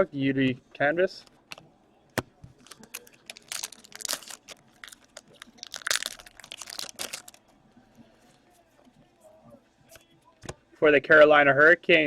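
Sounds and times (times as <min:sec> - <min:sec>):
wrapper tearing and crumpling: 0:02.6 - 0:07.4.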